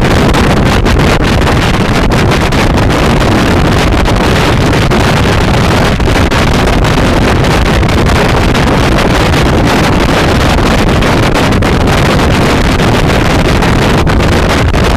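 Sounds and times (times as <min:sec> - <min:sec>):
wind buffeting microphone: 0:00.0 - 0:14.9.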